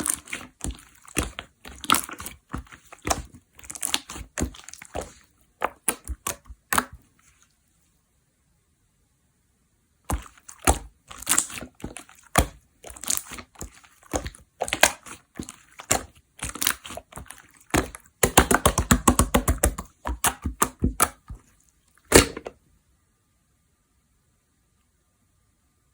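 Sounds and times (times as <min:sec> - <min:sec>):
slime popping and crackling: 0:00.0 - 0:07.0, 0:10.1 - 0:21.4, 0:22.1 - 0:22.5.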